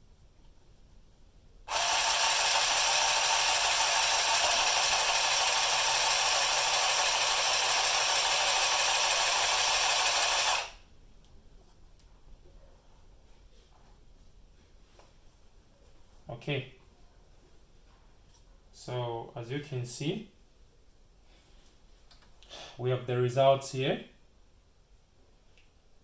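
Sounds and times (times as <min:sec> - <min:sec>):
sewing machine rattling: 0:01.7 - 0:10.8.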